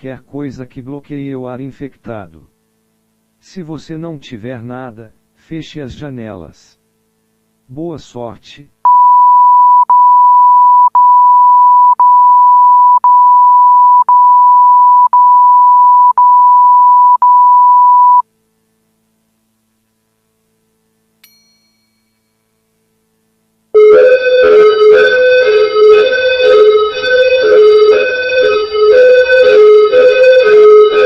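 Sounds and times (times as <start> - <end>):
high-pitched electronic alert tone: 23.8 - 31.0
keyboard music: 23.8 - 31.0.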